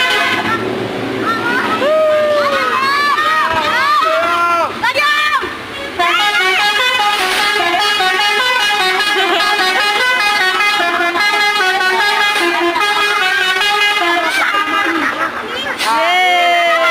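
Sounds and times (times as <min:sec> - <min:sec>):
bus musical multi-tone horn: 0:00.0 - 0:00.9, 0:05.8 - 0:15.9.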